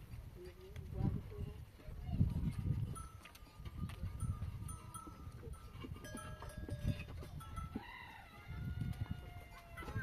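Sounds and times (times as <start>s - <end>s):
rooster crowing: 7.7s - 10.0s.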